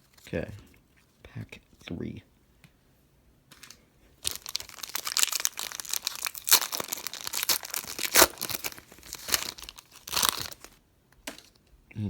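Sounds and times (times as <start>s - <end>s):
foil wrapper crinkling and tearing: 3.5s - 11.6s.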